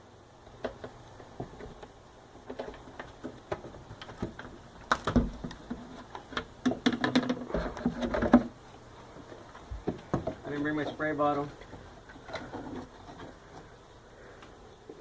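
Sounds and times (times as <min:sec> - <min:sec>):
irregular clicks and knocks: 0:00.5 - 0:08.6, 0:09.6 - 0:11.0.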